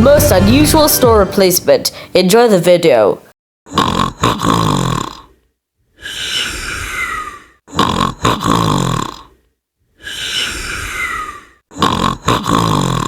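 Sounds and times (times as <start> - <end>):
cartoon snoring: 3.7 - 13.0
whistling out-breath: 6.0 - 7.6, 10.0 - 11.6.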